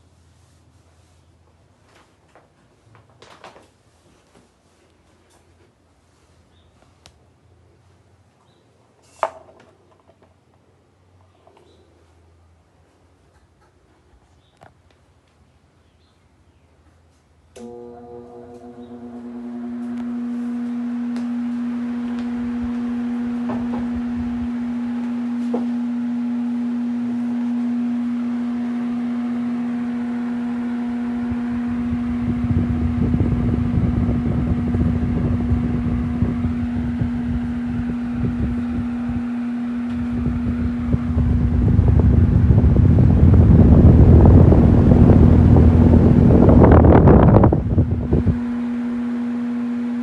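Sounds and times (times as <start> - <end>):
electric fan motor hum: 17.0 - 50.0
wind noise on microphone: 22.3 - 24.9, 30.9 - 48.7.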